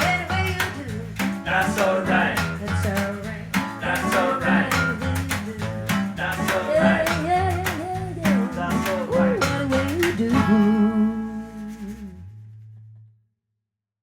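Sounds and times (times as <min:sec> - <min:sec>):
strummed acoustic guitar: 0:00.0 - 0:12.2
sliding melody line: 0:00.0 - 0:12.6
bass: 0:00.0 - 0:13.2.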